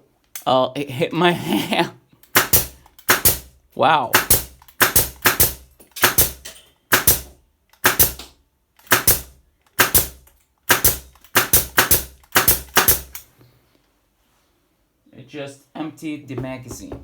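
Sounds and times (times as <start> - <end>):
nail gun firing: 2.2 - 3.5, 4.1 - 13.2.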